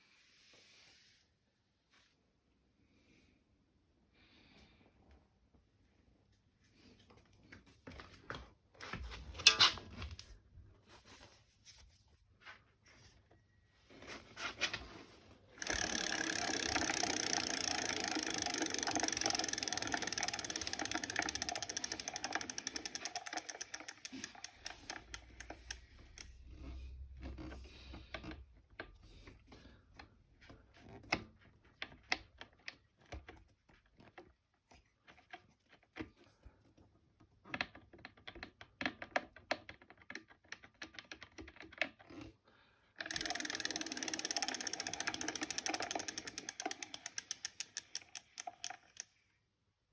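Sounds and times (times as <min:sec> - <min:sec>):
scattered clicks: 0:15.6 - 0:26.4, 0:43.1 - 0:49.1.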